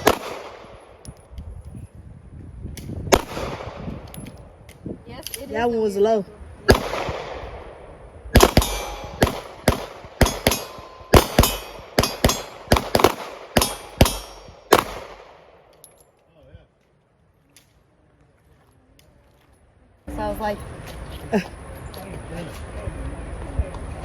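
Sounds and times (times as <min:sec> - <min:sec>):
pistol shots with echo: 0:00.0 - 0:01.1, 0:03.1 - 0:04.4, 0:06.7 - 0:15.9.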